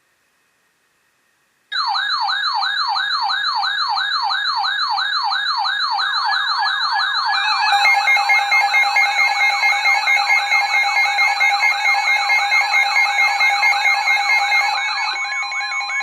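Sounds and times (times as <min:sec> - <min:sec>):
electronic siren sweeps: 0:01.8 - 0:16.0
fast pulsing beeps: 0:06.4 - 0:15.1.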